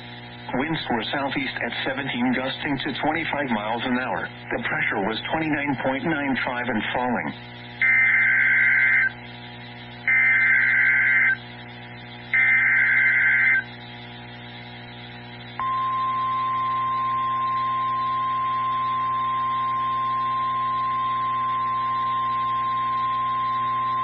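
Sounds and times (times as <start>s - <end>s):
harsh two-tone warbling data bursts: 7.8s - 9.2s, 10.1s - 11.4s, 12.4s - 13.7s
steady warning alarm tone: 7.8s - 9.2s, 10.1s - 11.4s, 12.3s - 13.7s, 15.6s - 24.0s.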